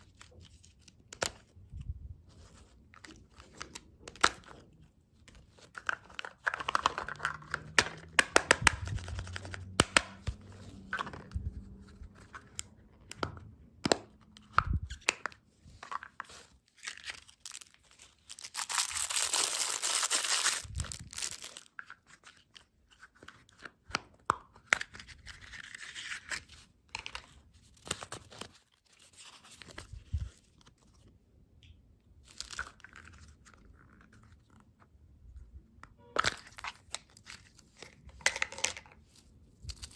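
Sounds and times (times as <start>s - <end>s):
snack packaging tearing and crinkling: 5.4s - 10.9s, 16.2s - 22.5s, 32.2s - 34.5s, 39.4s - 39.9s.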